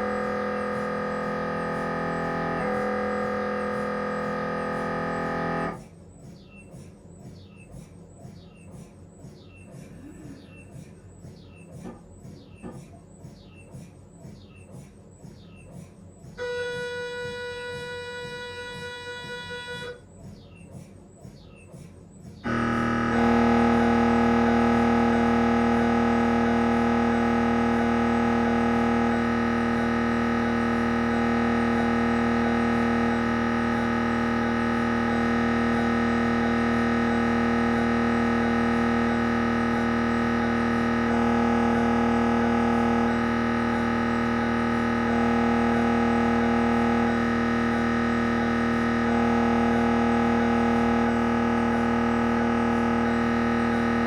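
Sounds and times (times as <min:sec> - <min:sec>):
mri scanner droning buzz: 0:00.0 - 0:05.8, 0:22.4 - 0:54.0
steady tone: 0:00.0 - 0:05.8, 0:22.4 - 0:54.0.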